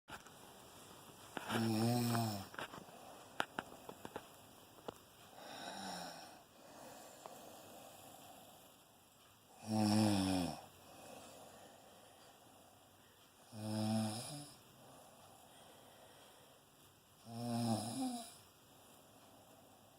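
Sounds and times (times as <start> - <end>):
soft breathing: 0.8 - 9.3, 10.6 - 13.5, 14.5 - 17.0, 18.3 - 19.9
person snoring: 1.4 - 2.6, 5.4 - 8.0, 9.5 - 11.4, 13.5 - 14.6, 17.2 - 18.4.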